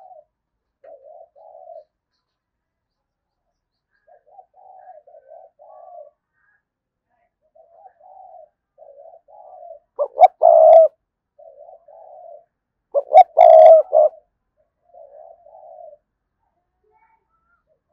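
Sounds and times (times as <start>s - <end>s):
dove cooing: 0.0s - 1.9s, 4.1s - 6.2s, 7.5s - 14.2s, 14.8s - 16.1s.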